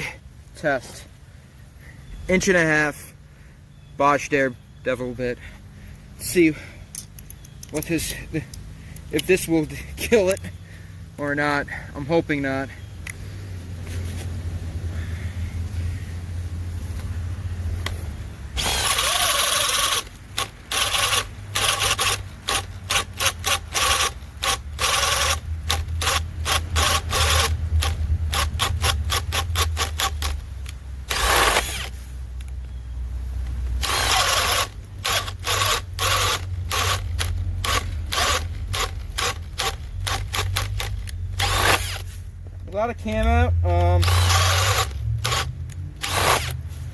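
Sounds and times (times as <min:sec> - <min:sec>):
hammer drill boring: 0:18.6 - 0:30.4, 0:31.1 - 0:31.9, 0:33.8 - 0:42.0, 0:44.0 - 0:46.6.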